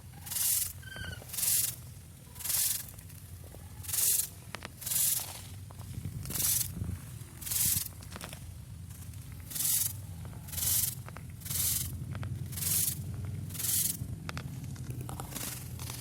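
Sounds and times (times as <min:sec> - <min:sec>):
steady low hum: 0:00.0 - 0:16.0
spray bottle hissing: 0:00.2 - 0:01.8, 0:02.4 - 0:02.9, 0:03.8 - 0:05.3, 0:07.4 - 0:07.9, 0:09.5 - 0:11.9.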